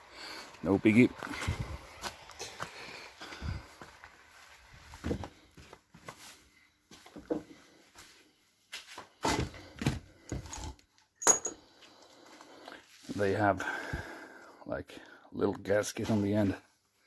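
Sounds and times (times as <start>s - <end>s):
tools knocking and clunking: 10.3s - 11.6s.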